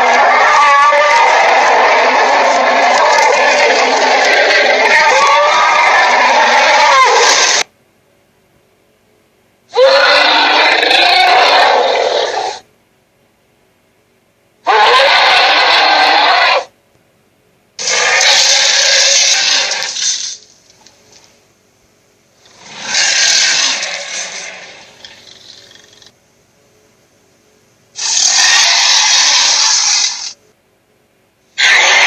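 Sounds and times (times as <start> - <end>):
harsh rasping sound effects: 0.0 - 7.7, 17.8 - 20.4, 22.5 - 26.1, 28.0 - 30.4.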